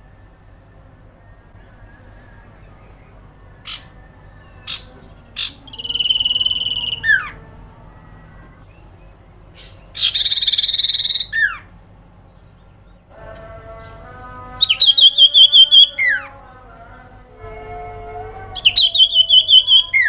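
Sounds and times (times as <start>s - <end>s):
bird chip notes: 2.9s - 11.6s, 12.8s - 20.0s
bird repeated notes: 3.6s - 8.7s, 9.6s - 11.6s, 13.1s - 16.4s, 17.4s - 20.0s
bird trilled phrases: 3.6s - 11.7s, 13.8s - 20.0s.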